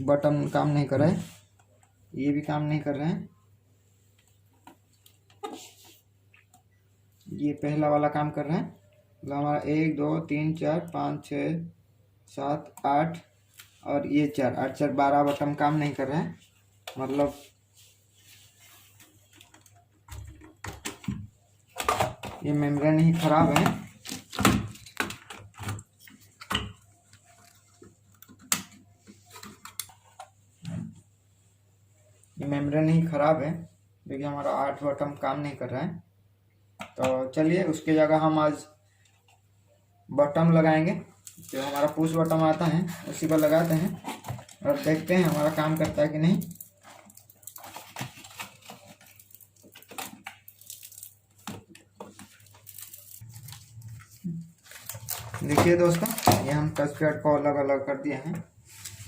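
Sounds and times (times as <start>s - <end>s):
plastic film crinkling and tearing: 41.2s - 56.6s.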